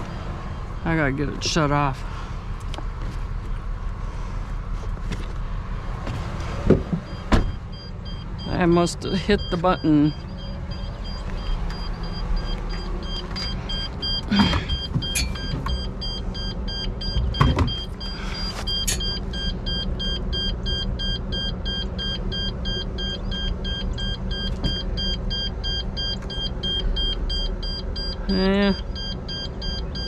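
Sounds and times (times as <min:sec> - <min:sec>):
low steady rumble: 0:00.0 - 0:30.0
rapid two-tone beeps: 0:07.1 - 0:30.0.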